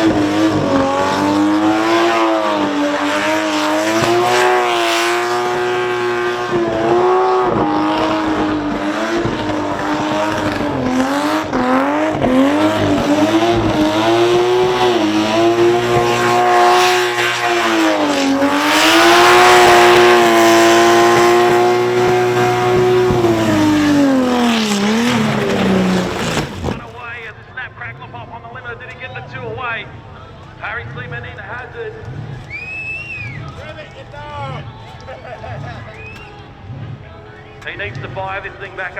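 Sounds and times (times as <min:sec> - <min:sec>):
car engine revving: 0:00.0 - 0:38.9
tyre squeal: 0:09.2 - 0:27.0, 0:32.0 - 0:37.0.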